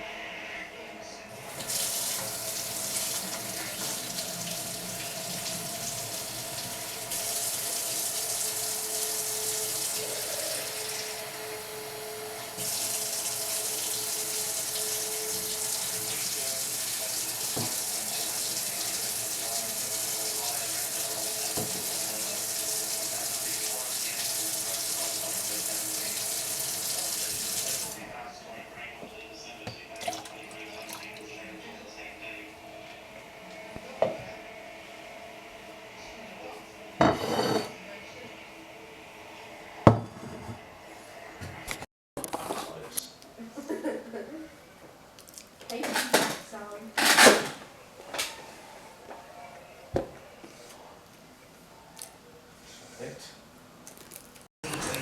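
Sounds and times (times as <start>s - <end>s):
tap water running into sink: 1.5s - 28.0s, 54.6s - 55.0s
tap turned off: 21.6s - 21.9s.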